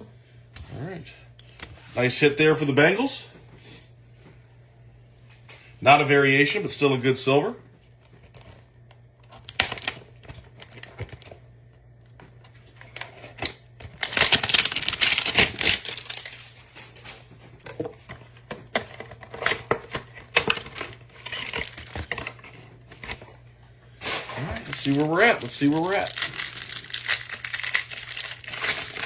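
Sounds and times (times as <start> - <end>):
packaging crinkling and tearing: 9.2 - 11.4, 12.4 - 23.3, 24.0 - 29.0
cards and cardboard rustling: 12.2 - 23.4, 24.0 - 29.0.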